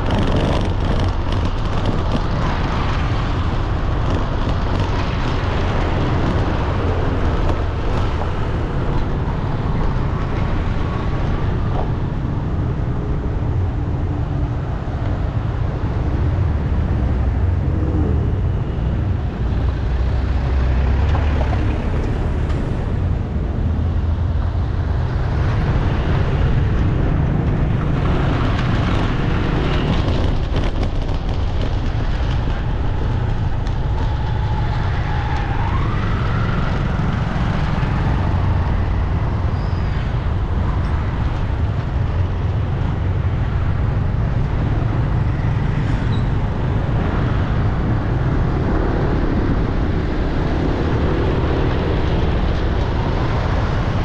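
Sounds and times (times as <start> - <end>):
street traffic rumble: 0.0 - 54.0
rising whine: 14.9 - 30.0.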